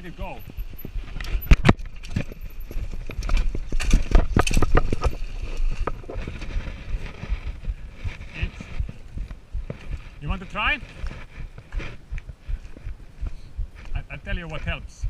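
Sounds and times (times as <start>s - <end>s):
mountain bike rattling over rocks: 0.3s - 7.6s.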